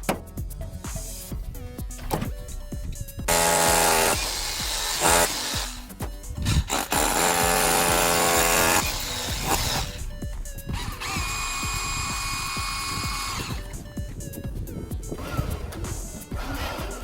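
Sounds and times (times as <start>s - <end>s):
background music: 0.0s - 17.0s
power drill whirring: 3.3s - 14.0s, 14.7s - 17.0s.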